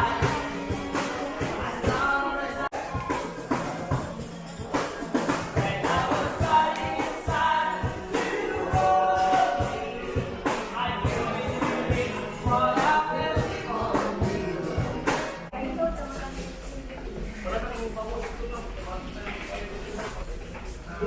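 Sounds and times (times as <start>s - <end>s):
song with beat and vocals: 0.0s - 15.5s.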